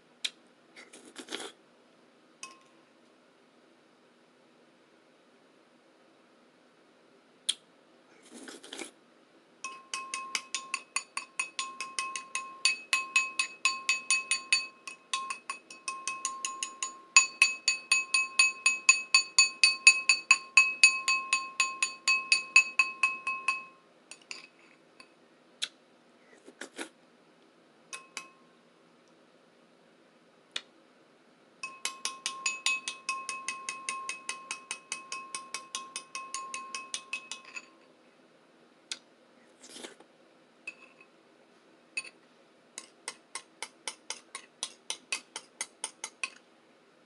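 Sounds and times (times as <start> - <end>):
bowl tapped rapidly: 9.7 - 24.3, 31.6 - 37.6.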